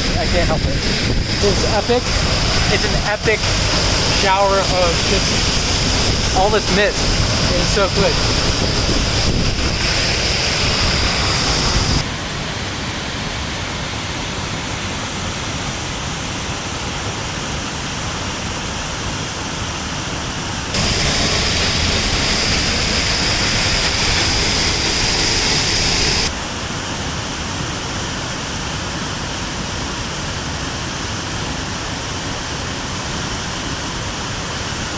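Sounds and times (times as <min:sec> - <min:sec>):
waterfall rushing: 0:00.0 - 0:12.2, 0:20.8 - 0:26.3.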